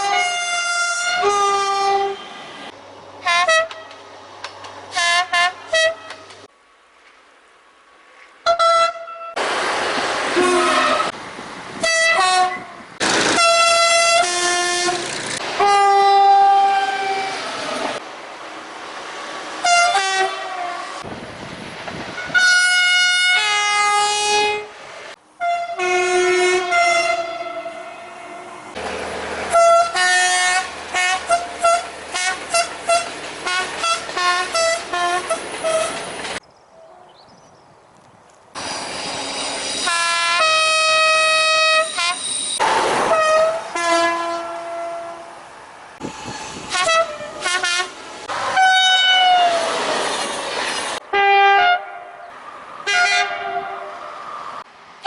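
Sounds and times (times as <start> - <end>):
train horn blasts and toots: 0.0 - 4.0, 4.9 - 6.4, 8.4 - 9.4, 10.4 - 11.2, 11.8 - 12.8, 13.4 - 17.5, 19.6 - 21.0, 22.2 - 24.8, 25.4 - 28.6, 29.5 - 36.0, 39.8 - 42.5, 43.1 - 45.4, 46.7 - 49.6, 51.1 - 52.2, 52.8 - 54.0.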